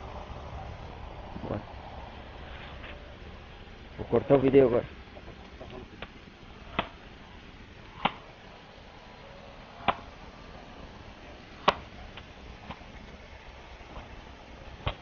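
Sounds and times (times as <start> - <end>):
steady hiss: 0.0 - 15.0
sharp knocks: 8.0 - 8.3, 9.8 - 10.1, 11.6 - 11.9.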